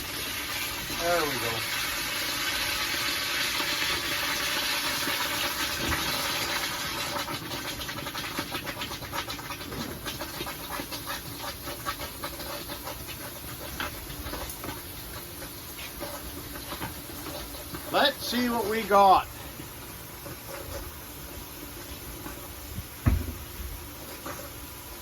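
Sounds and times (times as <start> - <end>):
steam hissing: 0.0 - 7.4, 15.0 - 20.6.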